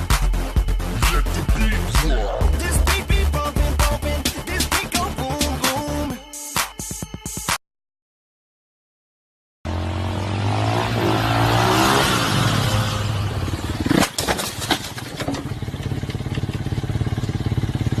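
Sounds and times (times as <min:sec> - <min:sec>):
engine running: 0:09.7 - 0:18.0
sharp knocks and clatter: 0:13.9 - 0:17.4.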